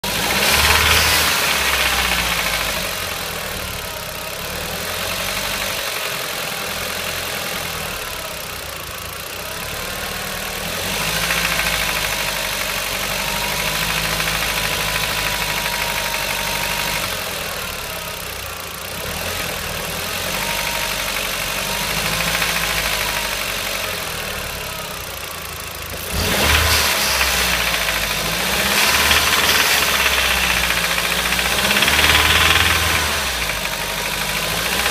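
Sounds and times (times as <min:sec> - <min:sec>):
car engine running: 0:00.0 - 0:34.9
engine ticking noise: 0:27.2 - 0:34.9.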